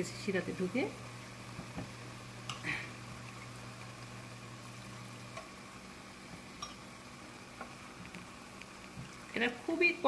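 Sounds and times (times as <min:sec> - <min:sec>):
food sizzling in hot oil: 0:00.0 - 0:10.0
utensil clicking against pan: 0:06.6 - 0:06.8.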